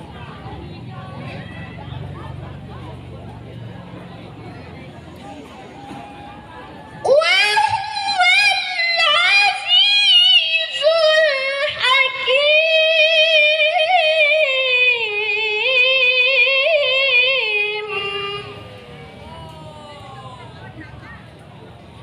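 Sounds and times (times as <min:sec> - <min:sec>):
woman reciting melodically: 0:07.0 - 0:19.0.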